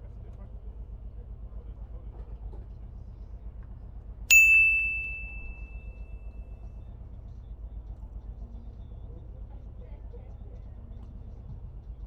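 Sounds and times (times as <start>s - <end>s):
low steady rumble: 3.0s - 6.1s
bell-like ding: 4.3s - 6.0s.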